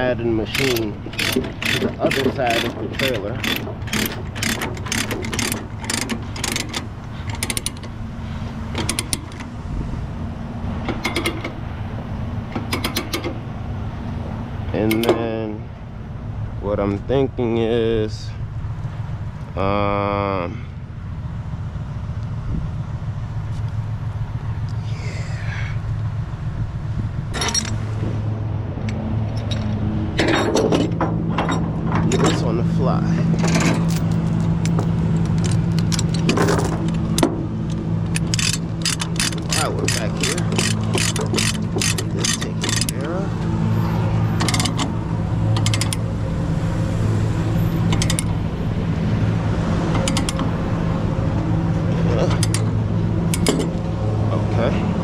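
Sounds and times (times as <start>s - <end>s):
ratchet clicking: 0.0s - 8.0s, 8.7s - 9.5s, 12.5s - 13.4s, 33.4s - 43.3s, 44.3s - 46.1s, 47.6s - 48.4s, 49.9s - 50.6s, 52.3s - 53.8s
metal clatters: 0.0s - 9.6s, 10.8s - 11.7s, 27.3s - 27.9s, 29.2s - 43.3s, 44.3s - 46.1s, 47.4s - 48.4s, 49.8s - 50.6s, 51.7s - 53.8s
engine idling: 0.0s - 55.0s.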